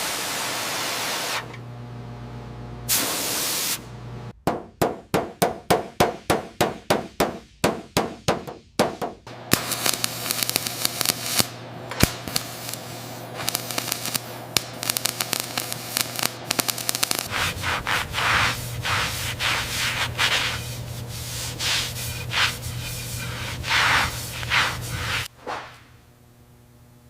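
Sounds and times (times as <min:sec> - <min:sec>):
sanding strokes: 0:17.3 - 0:25.7.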